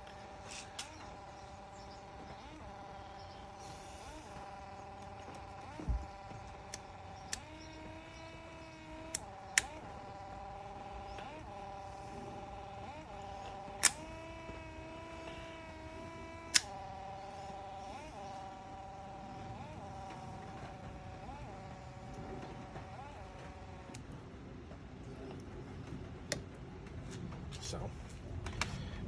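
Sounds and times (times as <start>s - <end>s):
wiper motor whining: 0.0s - 29.0s
wiper switch clicks: 13.4s - 14.6s, 16.5s - 16.8s.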